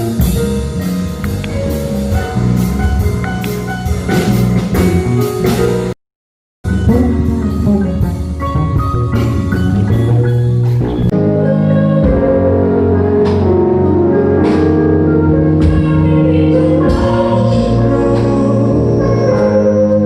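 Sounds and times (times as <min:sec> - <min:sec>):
organ-like chords: 0:00.0 - 0:06.0, 0:06.6 - 0:20.0
singing: 0:15.0 - 0:20.0.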